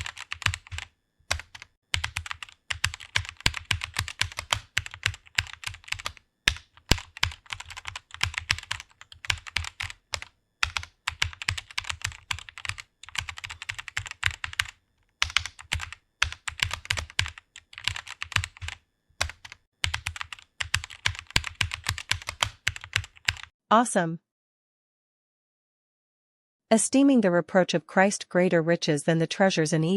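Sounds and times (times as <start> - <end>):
fast keyboard typing: 0.0 - 23.5.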